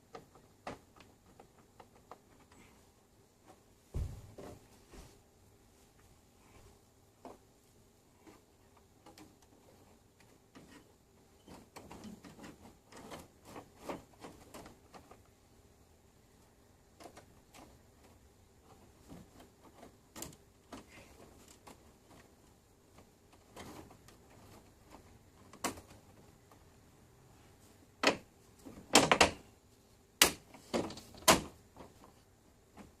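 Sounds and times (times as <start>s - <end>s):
clicks and knocks of objects handled: 0.0s - 2.8s, 8.2s - 15.4s, 16.9s - 26.7s, 30.2s - 33.0s.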